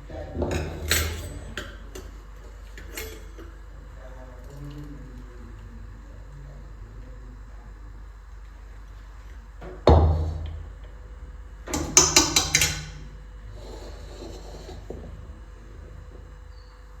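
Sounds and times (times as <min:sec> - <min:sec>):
metal utensil clanging: 0:00.5 - 0:03.6, 0:11.8 - 0:13.0
metal utensils tapping: 0:00.5 - 0:03.6, 0:11.8 - 0:13.0.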